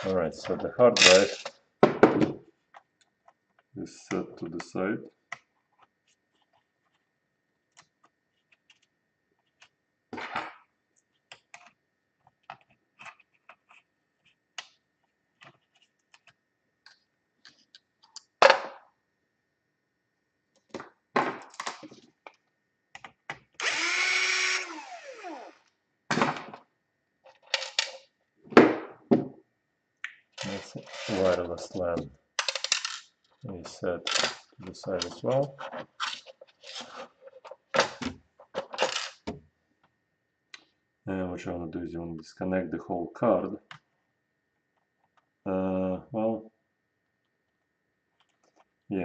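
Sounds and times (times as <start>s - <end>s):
small power tool whirring: 23.6s - 25.7s
clicks and knocks of small parts: 27.2s - 28.1s, 32.4s - 33.4s.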